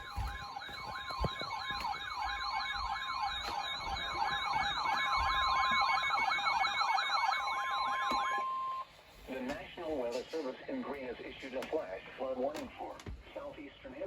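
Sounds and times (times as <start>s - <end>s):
steady high alert tone: 0.0s - 8.8s
electronic siren sweeping: 0.0s - 8.9s.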